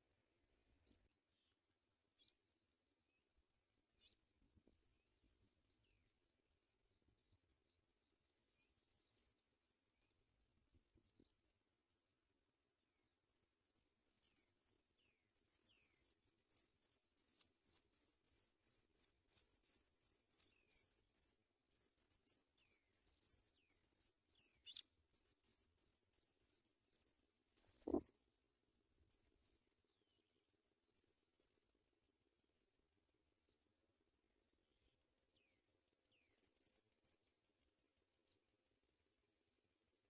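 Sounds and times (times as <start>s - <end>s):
nestlings chirping: 13.8s - 28.1s, 29.1s - 29.6s, 30.9s - 31.6s, 36.2s - 37.2s.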